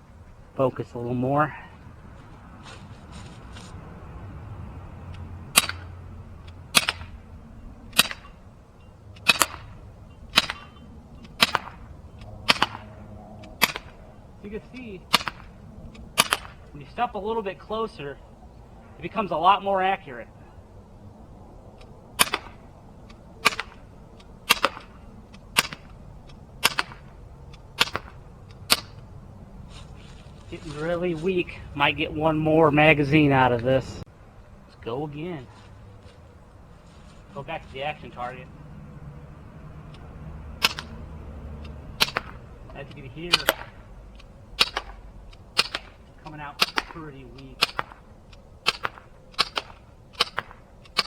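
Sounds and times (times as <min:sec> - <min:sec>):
air pistol shots popping: 0:06.8 - 0:07.2, 0:07.9 - 0:08.3, 0:09.2 - 0:14.0, 0:15.1 - 0:16.7, 0:22.2 - 0:22.6, 0:23.4 - 0:25.9, 0:26.6 - 0:27.1, 0:27.8 - 0:29.0, 0:40.6 - 0:41.0, 0:42.0 - 0:42.4, 0:43.3 - 0:43.8, 0:44.6 - 0:46.0, 0:46.6 - 0:51.0
bb pistol shot cracks: 0:11.4 - 0:11.8, 0:12.4 - 0:12.9
pistol click: 0:40.6 - 0:41.0, 0:47.6 - 0:51.0.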